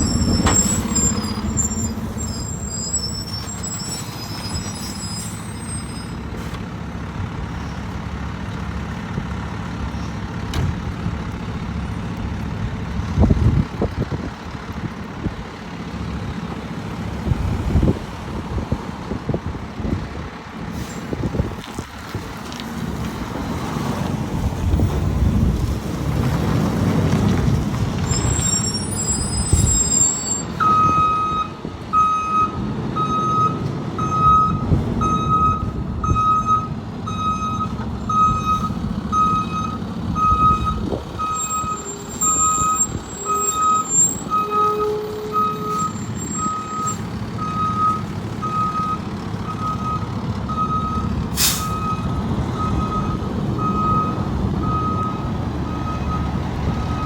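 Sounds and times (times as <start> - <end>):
truck engine running: 0.0 - 44.6
reversing alarm beeps: 30.0 - 51.1, 51.7 - 57.0.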